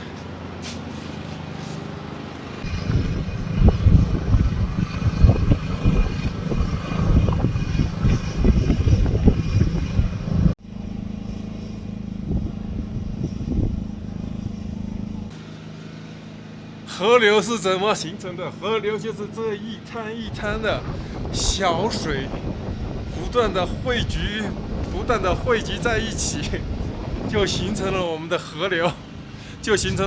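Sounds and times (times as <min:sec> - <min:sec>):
low engine hum: 0:00.0 - 0:30.0
wind buffeting microphone: 0:02.6 - 0:10.6, 0:11.2 - 0:15.4, 0:20.2 - 0:28.2, 0:29.0 - 0:30.0.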